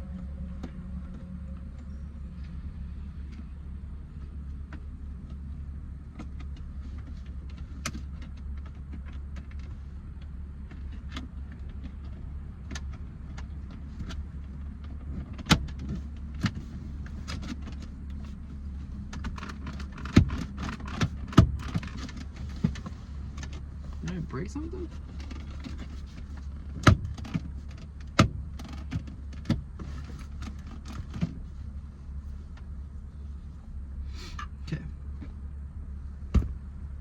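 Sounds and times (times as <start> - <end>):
low hum: 0.0 - 6.4.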